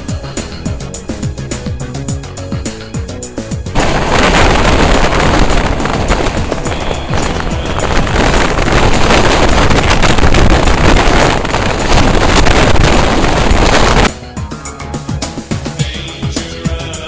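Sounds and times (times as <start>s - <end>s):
wind buffeting microphone: 3.8s - 14.1s.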